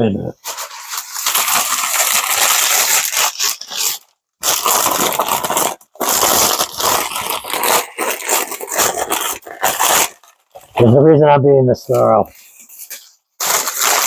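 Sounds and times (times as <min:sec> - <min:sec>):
packing material rustling and crackling: 0:00.4 - 0:11.0, 0:11.9 - 0:14.0.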